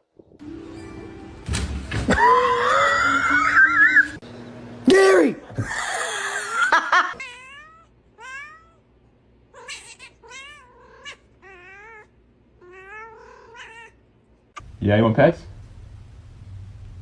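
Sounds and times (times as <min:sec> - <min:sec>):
cat meowing: 0:07.2 - 0:08.8, 0:09.6 - 0:14.0.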